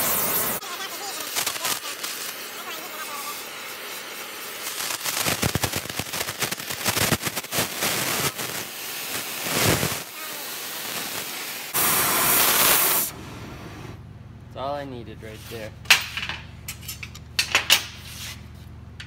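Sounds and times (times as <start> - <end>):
gas torch hissing: 0.0 - 14.0
crackling and popping: 1.1 - 2.5, 4.6 - 10.0.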